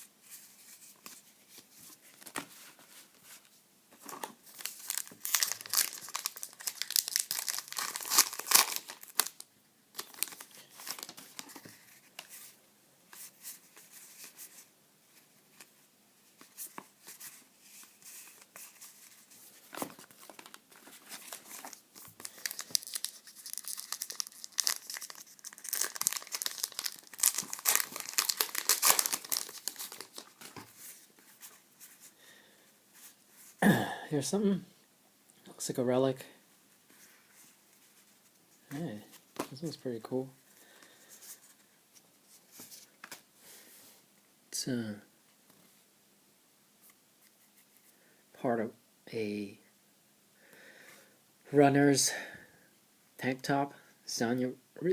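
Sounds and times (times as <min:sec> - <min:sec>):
cards rustling and ticking: 0:04.0 - 0:12.5, 0:16.4 - 0:31.6
wrappers tearing and crinkling: 0:04.6 - 0:09.4, 0:10.0 - 0:11.4, 0:21.2 - 0:30.6.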